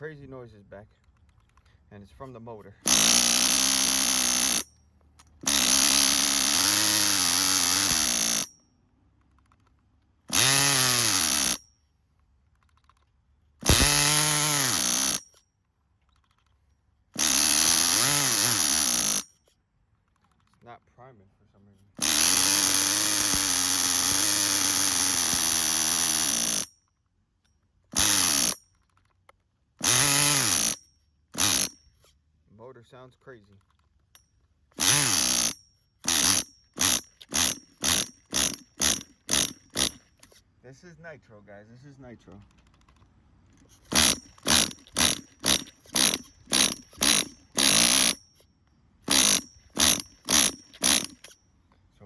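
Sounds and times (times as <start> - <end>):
electric starter whine: 2.8 - 8.5, 10.3 - 11.6, 13.6 - 15.4, 17.2 - 19.4, 22.0 - 26.7, 27.9 - 28.6, 29.8 - 31.8, 34.7 - 40.4, 43.6 - 48.4, 49.0 - 51.4
small engine cranking over: 2.8 - 8.5, 10.3 - 11.6, 13.6 - 15.4, 17.2 - 19.5, 21.9 - 26.7, 27.9 - 29.1, 29.8 - 32.2, 33.7 - 40.4, 42.5 - 48.4, 49.0 - 51.4.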